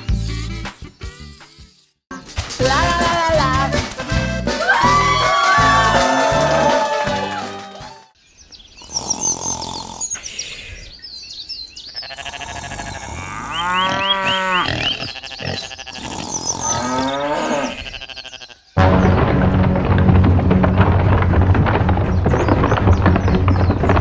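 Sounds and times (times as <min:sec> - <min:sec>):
loud music: 0:02.2 - 0:08.1
farm animal long call: 0:12.0 - 0:18.7.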